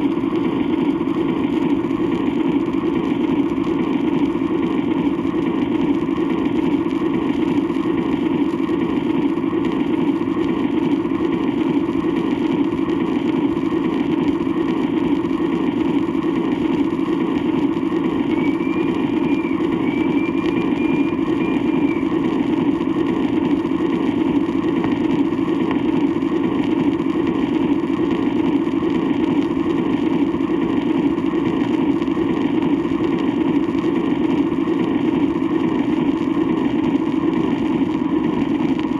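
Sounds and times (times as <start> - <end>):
record surface noise: 0.0 - 38.9
faint high tone: 18.2 - 22.2
train rumbling: 18.3 - 22.0.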